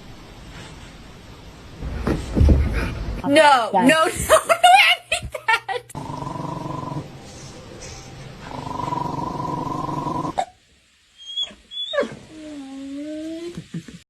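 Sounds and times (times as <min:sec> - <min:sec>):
dog growling: 0:06.0 - 0:07.1, 0:08.4 - 0:10.5
dog squeaking and whining: 0:11.2 - 0:12.3.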